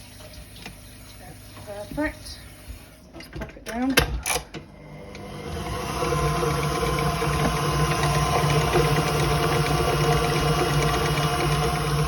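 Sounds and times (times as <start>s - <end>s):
electric mixer beating dough: 4.9s - 12.0s.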